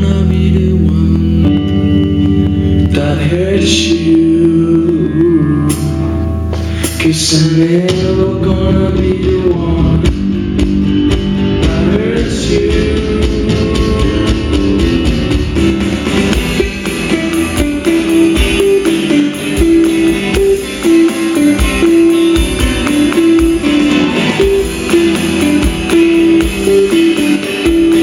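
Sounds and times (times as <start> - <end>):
person singing: 0.0 - 10.5, 11.1 - 15.6
guitar strumming: 0.0 - 28.0.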